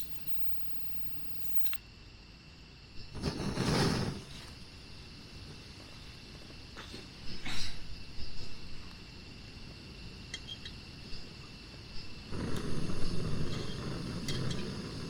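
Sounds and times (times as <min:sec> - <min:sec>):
crickets chirring: 0:00.0 - 0:02.9.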